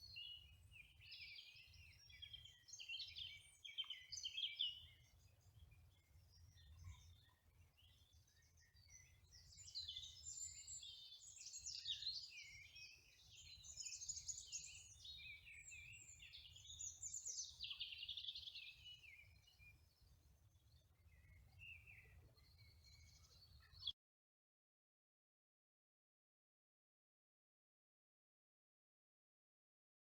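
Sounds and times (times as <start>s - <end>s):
songbird warbling and trilling: 0.1s - 5.2s, 8.3s - 19.6s.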